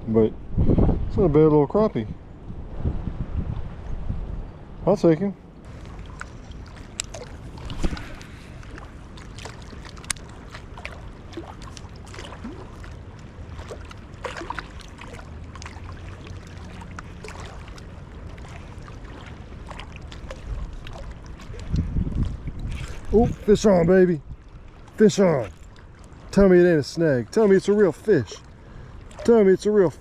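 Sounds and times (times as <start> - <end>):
wind rumble: 0.0 - 14.2, 18.0 - 26.4
fishing tackle clicks: 6.2 - 8.3, 9.8 - 10.4.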